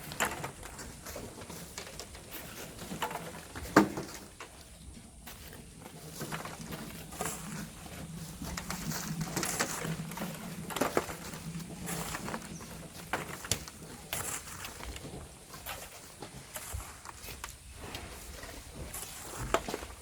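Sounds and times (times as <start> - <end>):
hand tools scraping sand and stones: 5.2 - 20.0.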